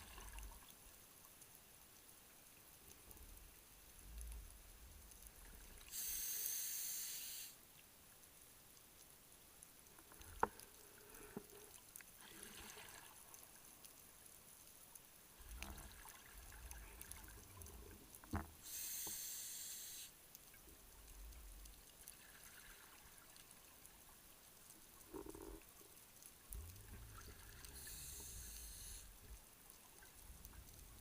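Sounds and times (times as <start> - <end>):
regulator hissing inhale: 5.9 - 7.6, 18.6 - 20.2, 27.5 - 29.2
exhaled bubbles rumbling: 26.5 - 28.0.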